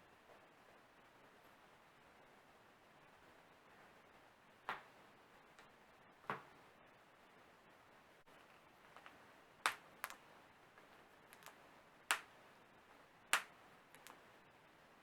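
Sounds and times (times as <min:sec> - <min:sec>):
toe joints cracking: 0:09.7 - 0:10.2
faint clicks: 0:11.4 - 0:12.3, 0:13.3 - 0:14.2.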